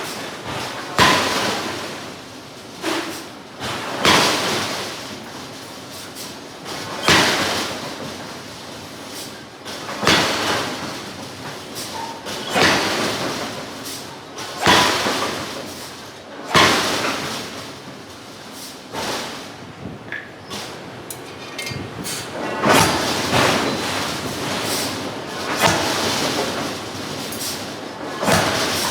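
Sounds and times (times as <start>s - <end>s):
forging hammer striking steel: 21.1s - 24.6s, 25.4s - 26.7s, 28.0s - 28.9s.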